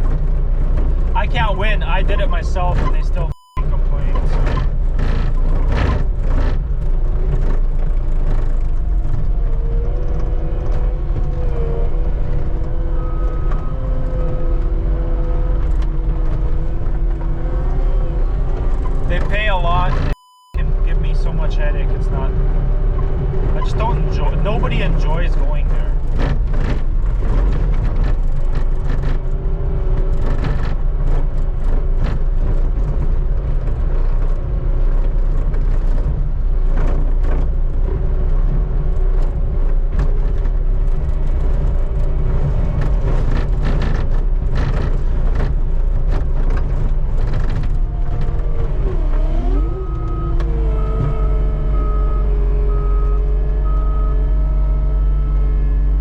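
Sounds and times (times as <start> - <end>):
diesel engine running under load: 0.0 - 56.0
backup alarm beeping: 2.1 - 4.3, 19.2 - 21.5.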